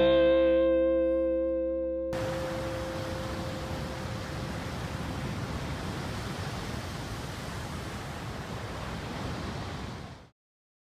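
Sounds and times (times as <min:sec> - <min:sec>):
ocean waves rushing: 0:02.2 - 0:10.3.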